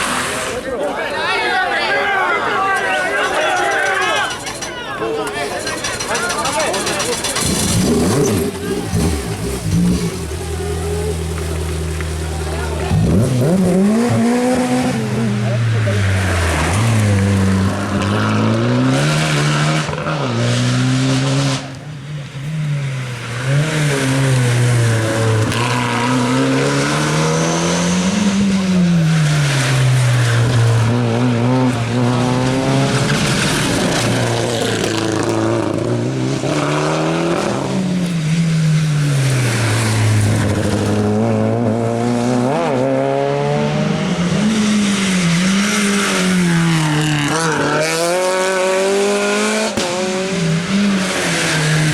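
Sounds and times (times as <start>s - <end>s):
tyres squealing: 1.6s - 13.8s
rally car engine revving: 5.7s - 51.9s.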